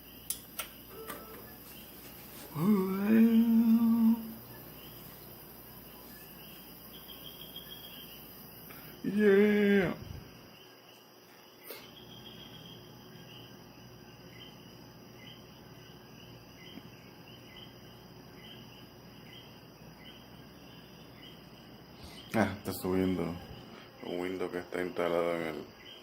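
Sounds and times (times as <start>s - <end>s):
crickets chirping: 0.0s - 26.0s
sharp click: 0.2s - 1.3s.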